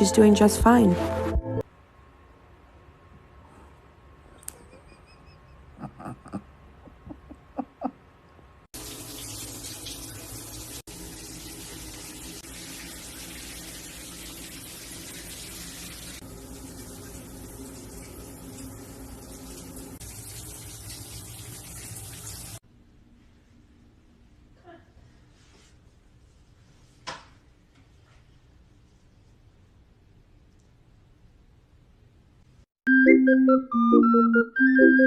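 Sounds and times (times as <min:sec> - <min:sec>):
water running from a tap: 0:08.8 - 0:22.6.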